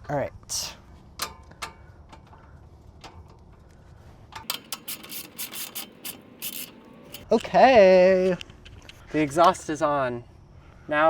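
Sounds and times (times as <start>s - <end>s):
hand tools clicking on metal: 1.2s - 3.4s, 4.3s - 7.5s.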